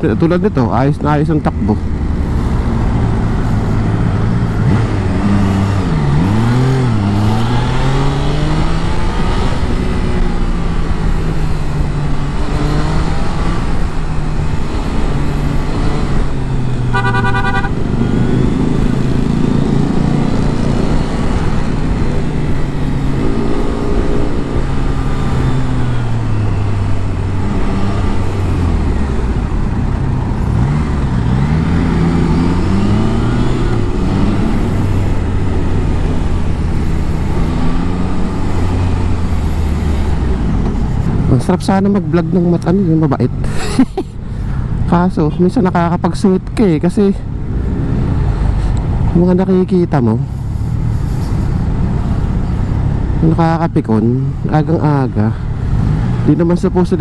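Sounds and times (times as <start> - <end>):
motorbike engine revving: 1.3 - 46.1
vehicle horn toot: 16.9 - 17.9.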